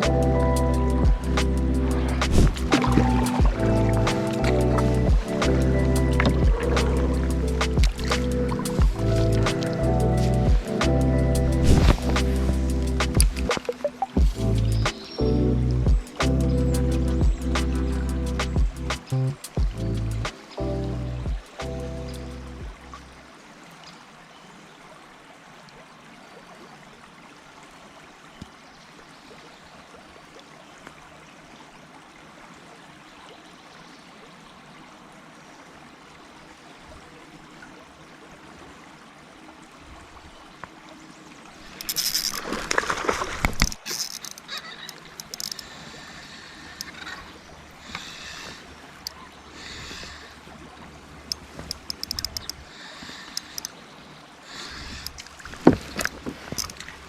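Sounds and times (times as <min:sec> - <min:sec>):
water splashing: 0:00.0 - 0:23.8, 0:35.7 - 0:57.0
river water trickling: 0:00.0 - 0:57.0.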